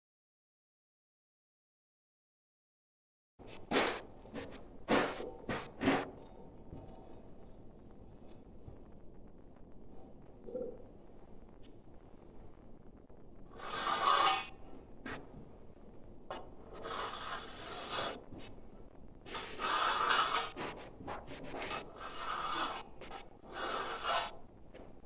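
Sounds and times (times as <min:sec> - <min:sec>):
faint scratching: 0:03.5 - 0:09.0, 0:13.5 - 0:15.4, 0:16.3 - 0:18.7, 0:19.3 - 0:25.0
hand tool scraping fiber board: 0:03.6 - 0:06.2, 0:13.6 - 0:14.5, 0:16.7 - 0:18.2, 0:19.3 - 0:24.4.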